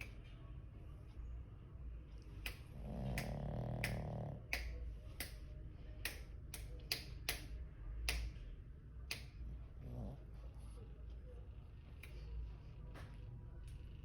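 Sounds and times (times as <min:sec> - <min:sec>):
dog snoring breath: 0:02.7 - 0:04.5, 0:09.8 - 0:10.8.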